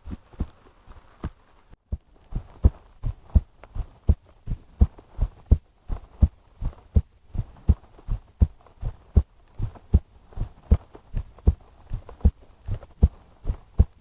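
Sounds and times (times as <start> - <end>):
human heartbeat: 0.0 - 14.0.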